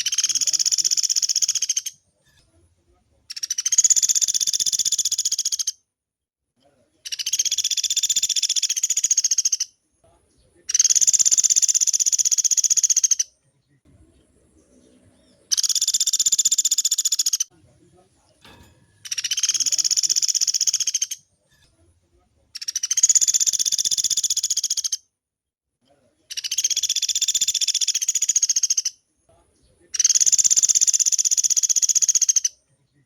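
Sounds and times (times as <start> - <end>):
woodpecker rattling trills: 0.0 - 2.0, 3.3 - 5.7, 7.1 - 9.6, 10.7 - 13.3, 15.5 - 17.5, 19.0 - 21.2, 22.6 - 24.9.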